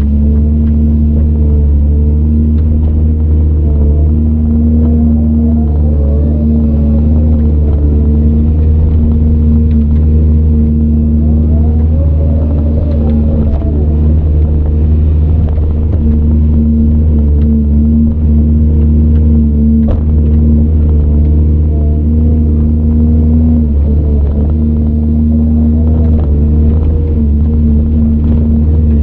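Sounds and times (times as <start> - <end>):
excavator diesel engine running: 0.0 - 29.0
high bending machine tone: 3.2 - 17.2.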